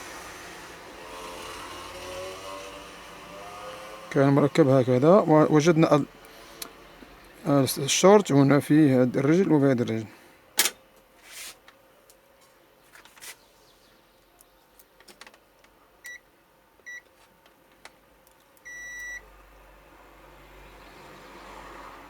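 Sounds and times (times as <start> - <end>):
multimeter continuity beeps: 18.6 - 19.2.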